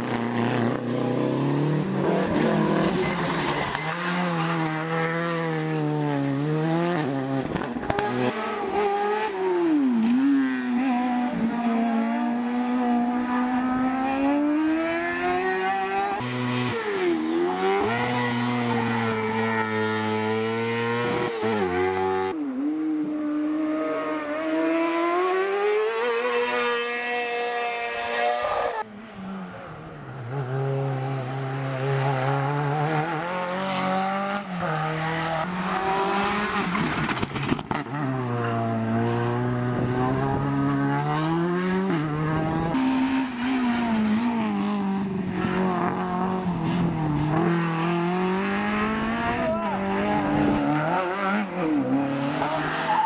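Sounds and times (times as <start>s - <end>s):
racing car engines revving: 0.0s - 53.0s
tyre squeal: 52.4s - 53.0s.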